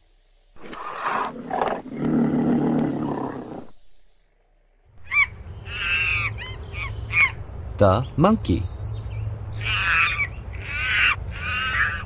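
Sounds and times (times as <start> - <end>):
big cat roaring: 0.6 - 3.7
harsh animal calls: 0.6 - 3.7, 5.0 - 7.4, 9.6 - 12.0.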